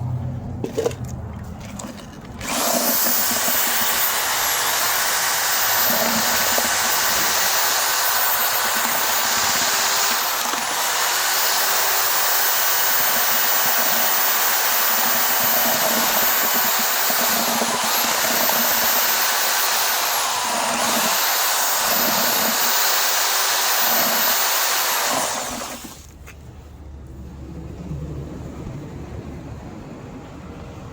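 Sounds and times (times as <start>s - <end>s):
electric drill mixing mortar: 1.8s - 26.2s.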